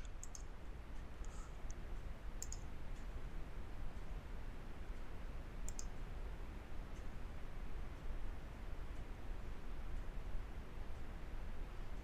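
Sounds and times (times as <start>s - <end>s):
computer mouse clicking: 0.0s - 0.5s, 2.4s - 3.1s, 5.7s - 6.0s
faint room hiss: 0.0s - 12.0s.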